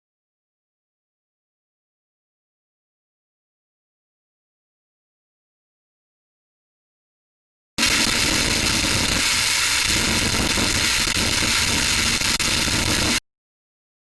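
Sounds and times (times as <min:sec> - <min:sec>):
harsh static hiss: 0:07.8 - 0:13.2
rough crackle: 0:07.8 - 0:13.2.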